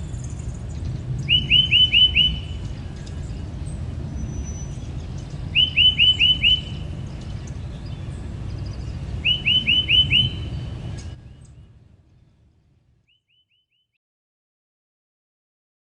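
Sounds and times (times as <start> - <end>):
bird chirping: 0.0 - 12.4, 13.0 - 14.0
low steady rumble: 0.0 - 13.1
faint bird calls: 1.2 - 3.6, 4.2 - 11.6.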